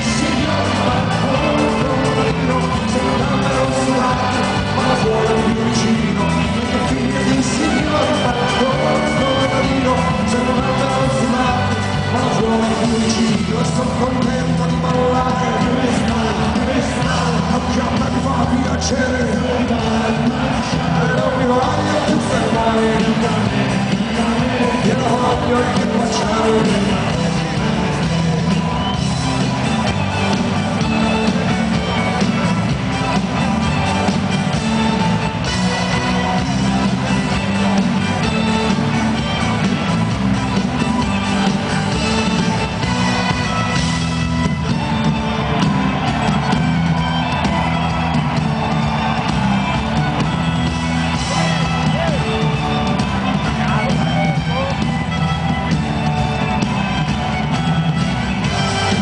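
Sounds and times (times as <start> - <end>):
person singing: 0.0 - 40.0
live band playing: 0.0 - 59.0.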